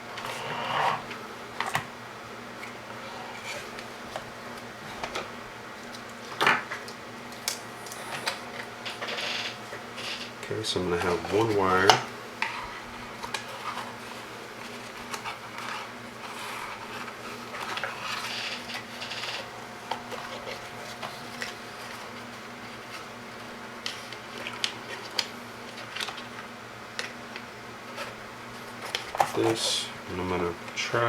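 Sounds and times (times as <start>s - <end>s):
steady low hum: 0.0s - 31.0s
wires rustling: 27.0s - 30.8s.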